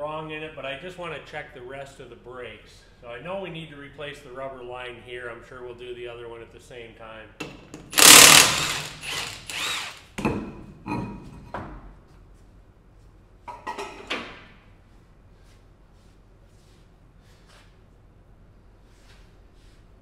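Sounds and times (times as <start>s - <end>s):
tools working on brakes: 7.9s - 10.1s.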